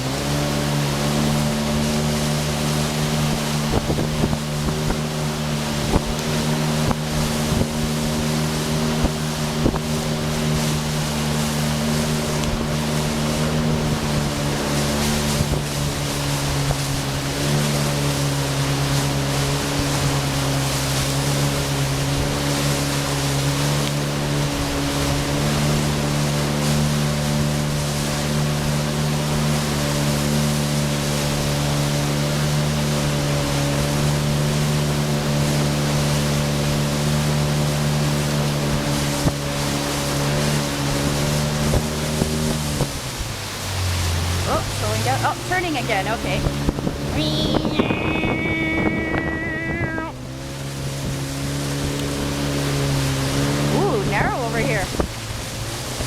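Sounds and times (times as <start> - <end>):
speedboat engine running: 0.0 - 56.0
water rushing past hull: 0.0 - 56.0
wind on microphone: 1.0 - 22.8, 38.6 - 56.0.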